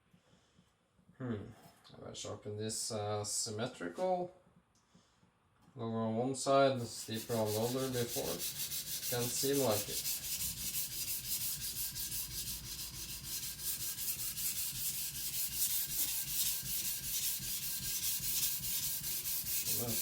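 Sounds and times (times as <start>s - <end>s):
knife grinding on whetstone: 6.9s - 20.0s.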